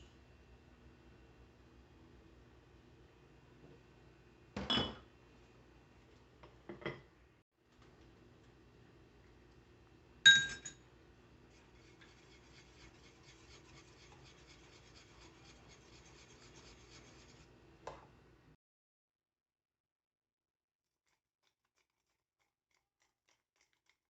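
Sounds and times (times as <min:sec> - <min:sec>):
utensil striking glass bowl: 0:10.3 - 0:10.8.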